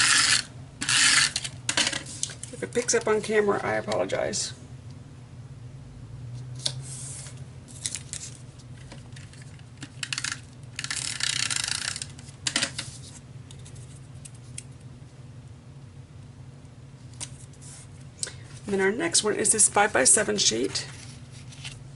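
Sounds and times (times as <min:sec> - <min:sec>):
paper rustling: 0:20.7 - 0:21.8.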